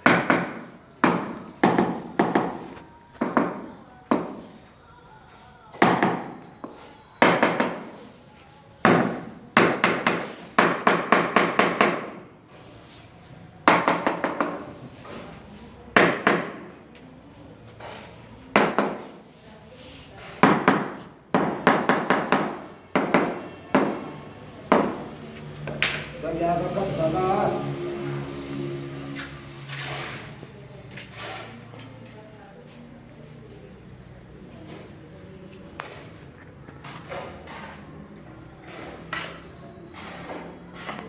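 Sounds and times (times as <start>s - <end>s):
hammer strikes: 0.1s - 4.4s, 7.2s - 7.9s, 8.8s - 12.2s, 13.7s - 14.6s, 16.0s - 16.7s, 20.4s - 26.2s.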